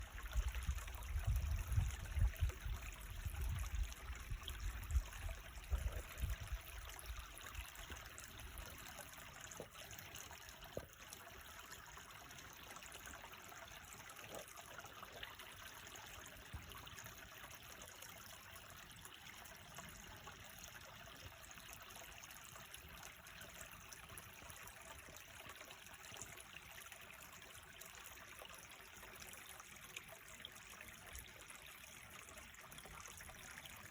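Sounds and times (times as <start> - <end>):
creek water trickling: 0.0 - 33.9
low rumbling on microphone: 0.2 - 7.4.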